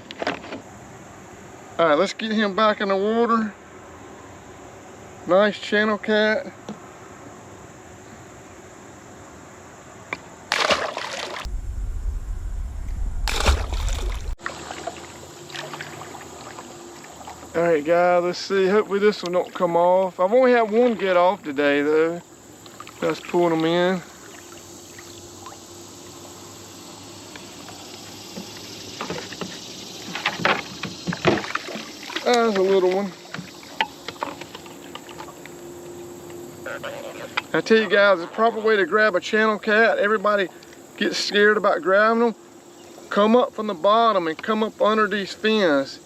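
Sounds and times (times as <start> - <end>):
water splashing: 10.5 - 17.5, 31.0 - 35.5
steady soft hiss: 11.4 - 14.4
low rumble: 11.5 - 14.4.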